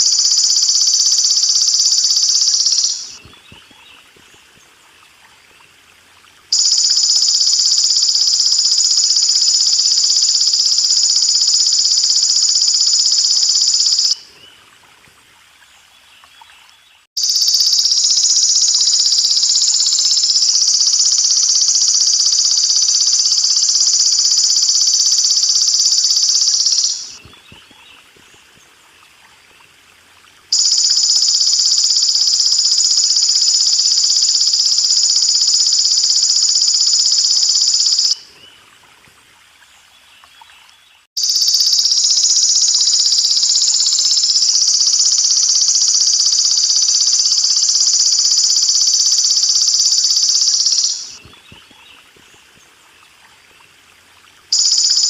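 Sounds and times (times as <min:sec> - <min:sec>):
grasshopper buzzing trill: 0:00.0 - 0:03.2, 0:17.2 - 0:27.2, 0:30.5 - 0:38.2, 0:41.2 - 0:51.2, 0:54.5 - 0:55.0
faint water trickle: 0:00.0 - 0:41.1, 0:51.2 - 0:55.0.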